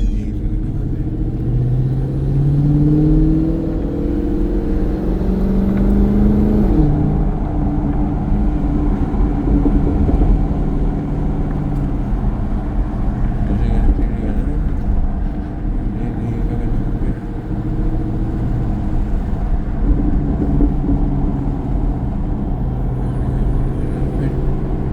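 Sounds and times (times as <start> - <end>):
car engine revving: 0.0 - 24.9.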